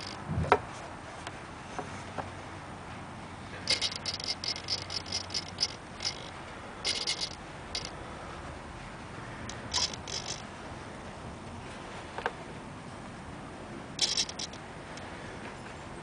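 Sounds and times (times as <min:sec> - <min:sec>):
mechanical release mechanism bursts: 0:03.7 - 0:07.9, 0:09.6 - 0:10.4, 0:14.0 - 0:14.6.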